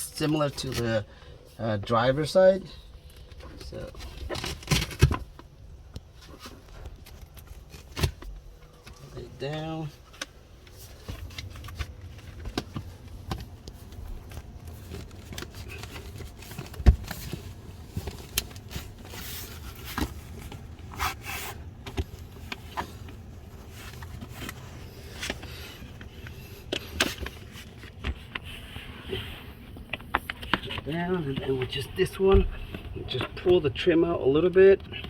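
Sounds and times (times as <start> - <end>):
scraping rustles: 6.1 - 33.5.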